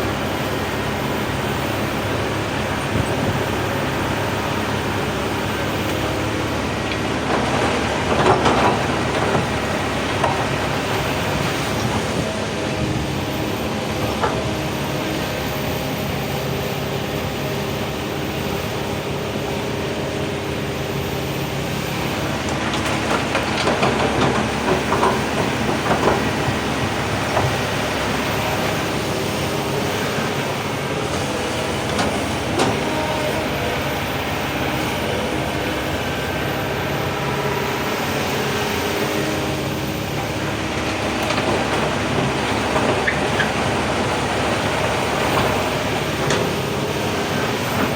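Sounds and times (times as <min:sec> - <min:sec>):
excavator diesel engine running: 0:00.0 - 0:47.9.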